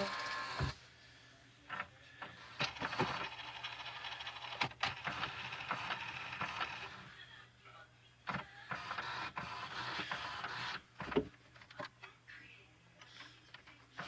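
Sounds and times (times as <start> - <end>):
printer mechanism whirring: 0.0 - 0.8, 1.7 - 7.0, 8.3 - 11.7.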